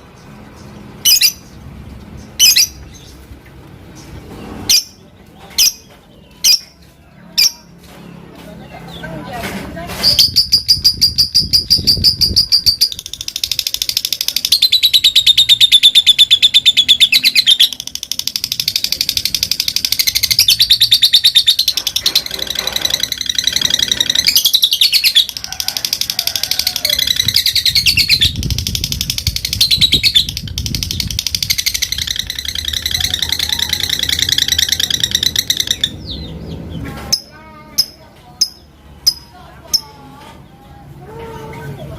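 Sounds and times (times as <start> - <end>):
lovebird chattering trill: 1.0 - 1.5, 2.3 - 3.1, 10.1 - 36.3.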